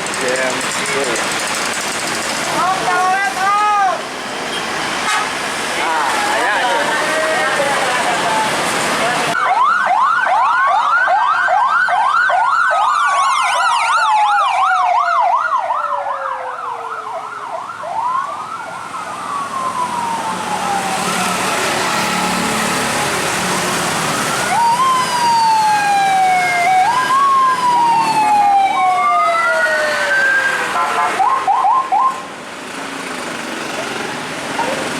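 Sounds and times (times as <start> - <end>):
slow siren wails: 9.3 - 32.4
electronic siren horn yelping: 30.6 - 32.2.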